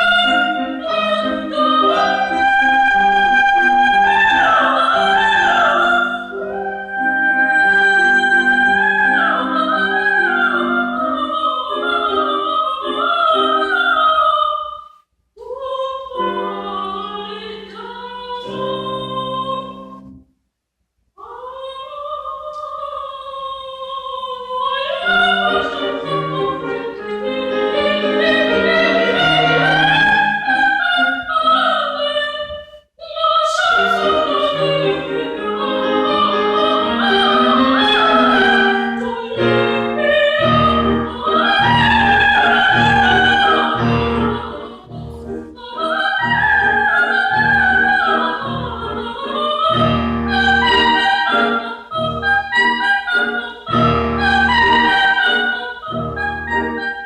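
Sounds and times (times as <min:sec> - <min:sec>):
piano accompaniment: 0:00.0 - 0:14.0, 0:24.8 - 0:32.0, 0:33.5 - 0:57.0
soprano singing opera: 0:00.0 - 0:20.1, 0:21.2 - 0:57.0.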